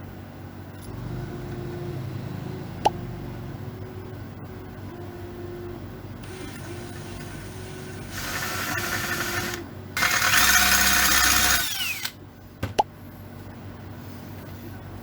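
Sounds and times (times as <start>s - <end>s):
power drill whining: 6.2s - 12.2s.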